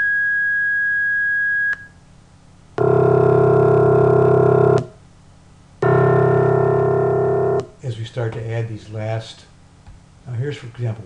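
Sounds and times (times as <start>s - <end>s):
high sine tone: 0.0s - 2.0s, 2.8s - 5.0s, 5.8s - 7.8s
low buzzy synthesized tone: 2.8s - 5.0s, 5.8s - 7.8s.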